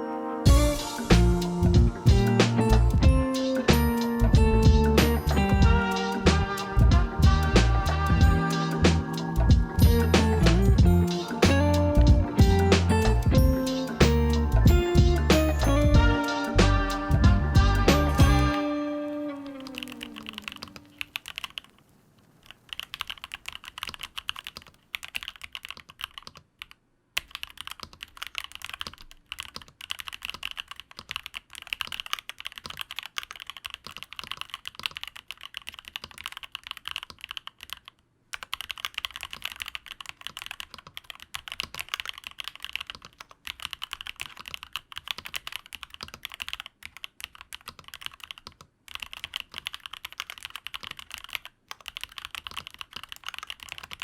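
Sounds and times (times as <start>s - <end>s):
mechanical keyboard typing: 19.4s - 21.8s, 22.5s - 54.0s.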